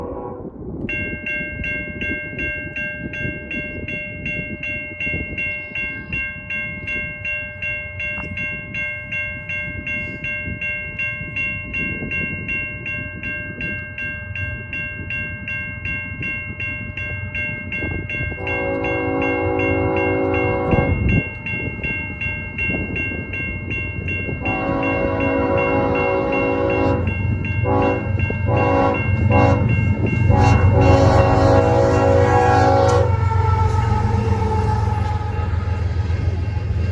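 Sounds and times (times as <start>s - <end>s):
locomotive air horn blasts: 0.0s - 0.5s, 18.4s - 21.1s, 24.4s - 36.8s
train rumble: 0.0s - 36.9s
locomotive bell ringing: 0.8s - 36.9s.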